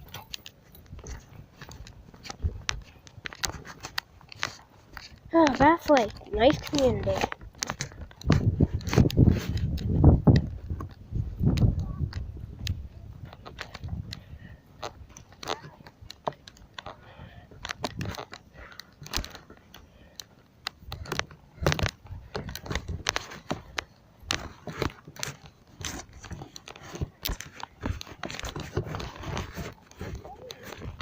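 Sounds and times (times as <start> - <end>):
footsteps: 0.0 - 31.0
fishing gear rattling: 13.2 - 31.0.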